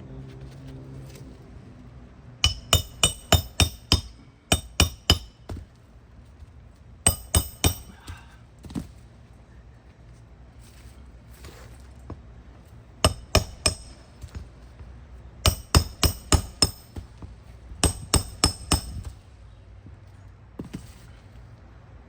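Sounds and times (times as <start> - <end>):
hammer striking a nail: 2.4 - 5.7, 7.1 - 8.2, 13.0 - 14.4, 15.4 - 17.2, 17.8 - 19.2.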